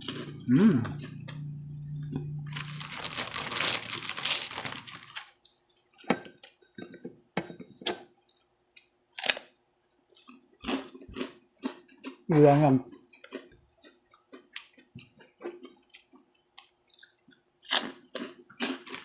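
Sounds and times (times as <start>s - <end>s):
crunching crispy food: 2.1s - 5.7s, 8.3s - 12.2s, 15.5s - 19.0s.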